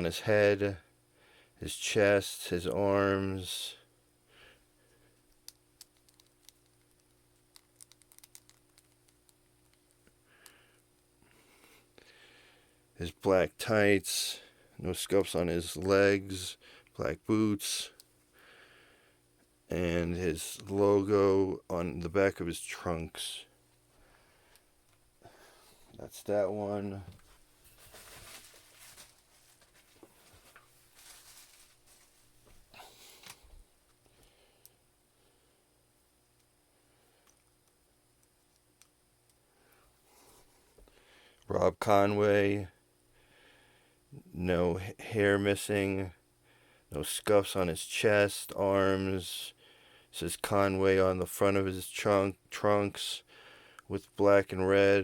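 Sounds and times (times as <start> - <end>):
faint steady hum: 0.0 - 55.0
rustling of packaging: 27.1 - 33.4.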